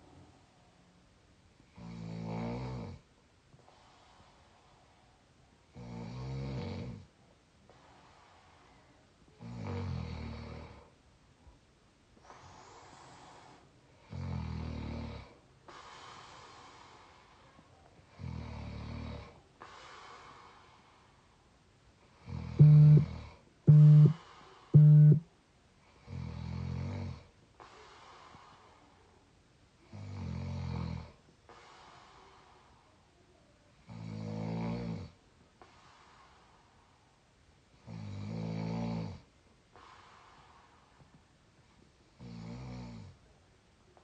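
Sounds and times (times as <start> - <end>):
soft breathing: 3.5 - 5.5, 7.0 - 9.4, 12.2 - 14.2, 15.2 - 25.2, 27.2 - 29.3, 31.1 - 33.8, 35.1 - 37.8, 39.5 - 42.2
person snoring: 22.2 - 24.2, 24.8 - 25.2.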